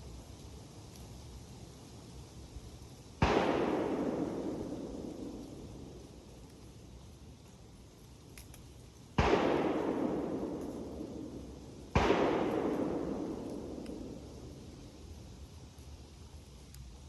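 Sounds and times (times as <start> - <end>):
shotgun shots with echo: 3.2 - 5.0, 9.2 - 11.0, 11.9 - 13.8.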